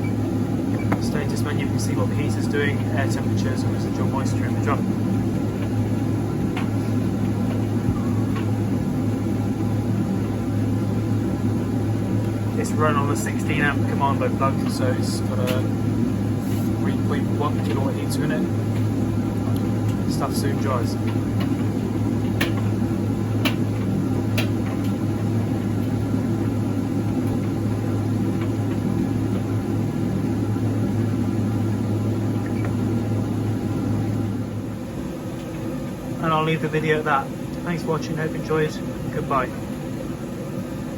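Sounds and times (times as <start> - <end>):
tumble dryer humming: 0.0 - 40.9
load tumbling taps: 0.7 - 1.2, 21.0 - 22.7, 23.4 - 25.0.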